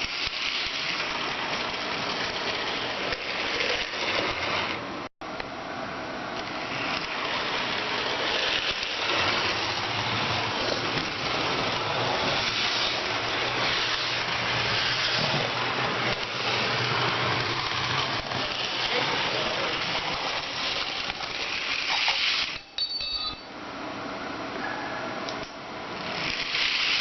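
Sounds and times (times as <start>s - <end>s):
motor running with hiss and rattle: 0.0s - 5.0s, 6.4s - 22.8s, 24.6s - 27.0s
high ringing tones: 22.6s - 23.6s.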